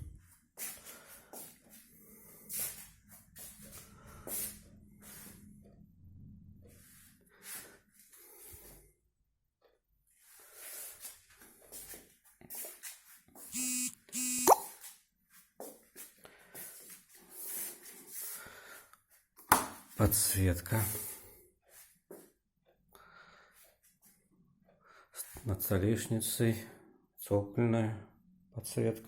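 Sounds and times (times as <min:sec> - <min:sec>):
short buzzing tones: 0:13.5 - 0:14.6.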